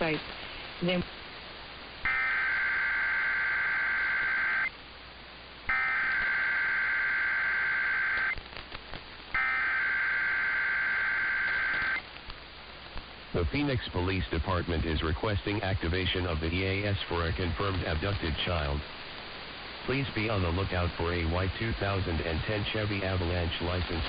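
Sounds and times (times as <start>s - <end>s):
two-tone screeching data bursts: 2.0s - 4.7s, 5.7s - 8.4s, 9.4s - 12.0s.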